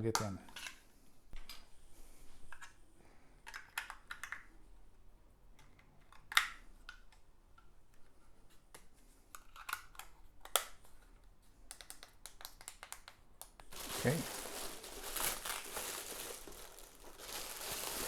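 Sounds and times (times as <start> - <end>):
hands handling plastic parts: 8.0 - 18.0.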